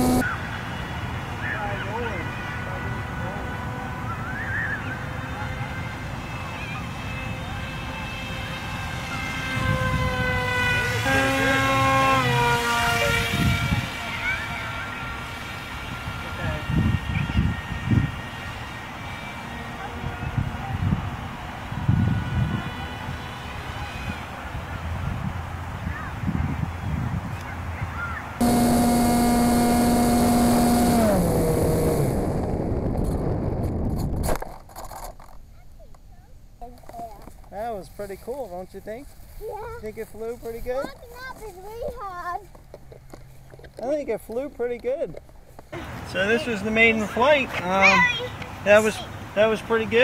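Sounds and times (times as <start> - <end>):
electric motor and propeller whining: 0.0 - 25.3, 28.4 - 34.4.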